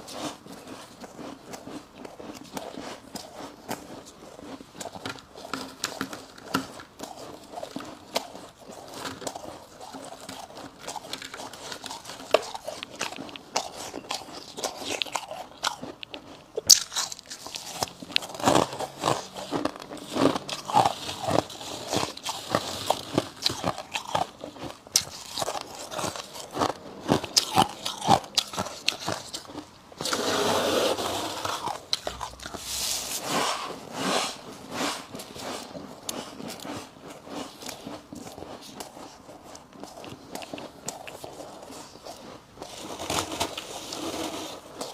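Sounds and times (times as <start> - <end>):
crunchy chewing of frost: 0.0 - 44.9.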